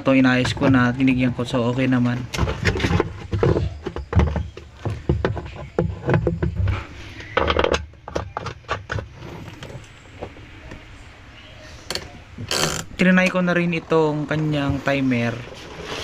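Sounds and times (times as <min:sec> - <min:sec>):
knocks and handling clatter: 0:00.0 - 0:10.9.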